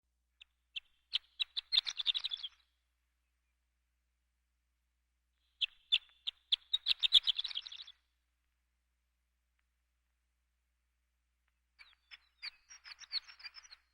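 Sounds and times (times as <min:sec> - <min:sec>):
lark singing: 0:05.6 - 0:08.0.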